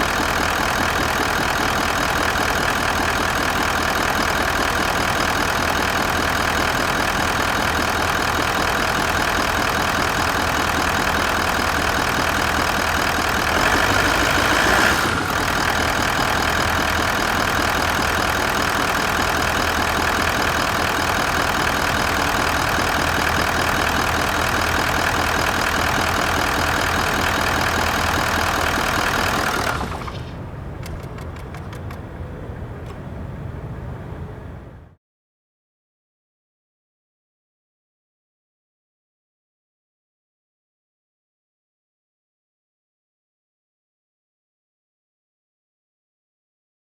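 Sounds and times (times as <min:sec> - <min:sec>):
diesel engine idling: 0:00.0 - 0:35.0
faint clicks: 0:28.4 - 0:32.1.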